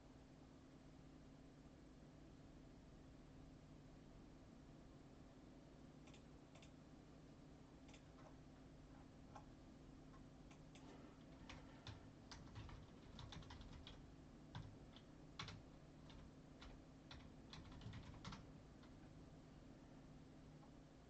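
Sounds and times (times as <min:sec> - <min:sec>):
low steady hum: 0:00.0 - 0:21.0
typing on computer keyboard: 0:10.1 - 0:19.0.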